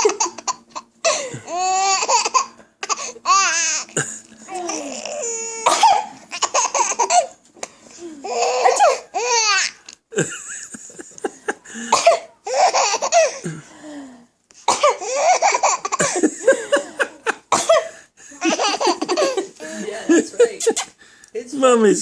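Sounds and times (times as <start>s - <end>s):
baby laughing: 0.0s - 7.4s, 8.2s - 9.8s, 10.7s - 13.4s, 14.8s - 17.4s, 18.4s - 19.6s.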